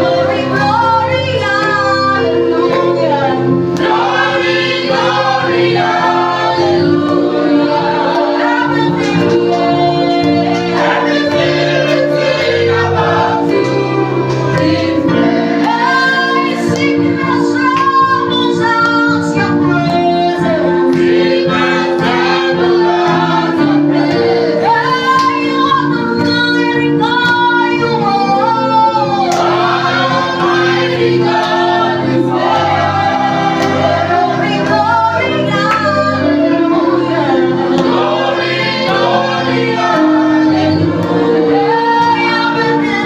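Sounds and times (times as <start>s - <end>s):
group singing gospel: 0.0s - 43.0s
held instrumental notes: 0.0s - 43.0s.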